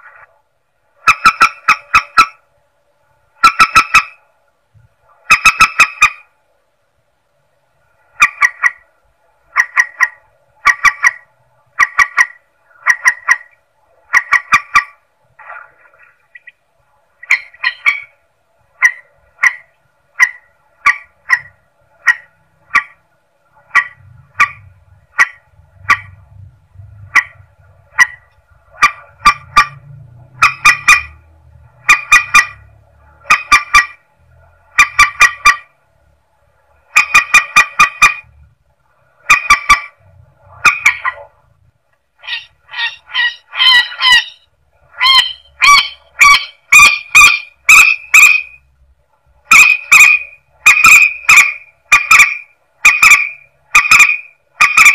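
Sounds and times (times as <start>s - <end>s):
water bird nasal honking calls: 42.2s - 48.6s, 49.5s - 54.9s.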